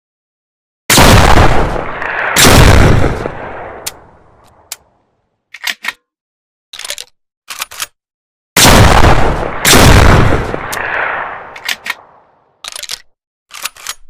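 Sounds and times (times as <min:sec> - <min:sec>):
shotgun shots echoing: 0:00.9 - 0:04.7, 0:08.6 - 0:12.3.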